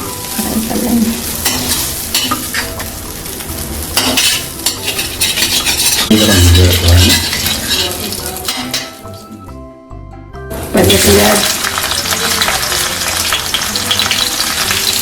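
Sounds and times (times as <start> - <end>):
food sizzling in a pan: 0.0 - 9.4, 10.5 - 15.0
spatula scraping a pan: 4.0 - 9.0.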